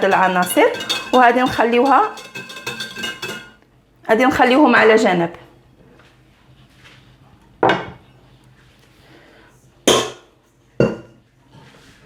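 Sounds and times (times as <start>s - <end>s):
kitchenware knocking on countertop: 0.0s - 3.6s.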